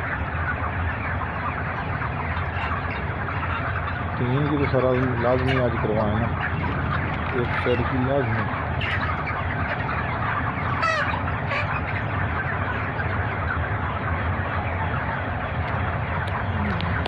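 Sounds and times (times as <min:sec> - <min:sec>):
chickens clucking: 0:00.0 - 0:17.0
fans humming: 0:00.0 - 0:17.0
chicken rising call: 0:01.2 - 0:13.8.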